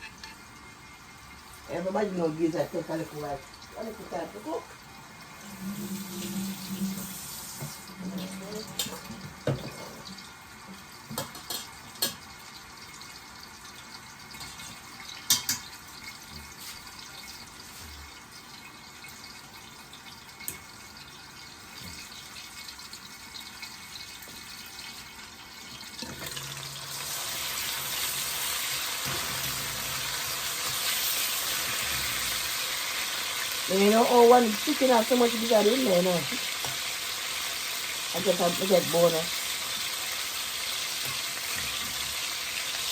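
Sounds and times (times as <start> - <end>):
food sizzling in a hot pot: 0.0 - 42.9.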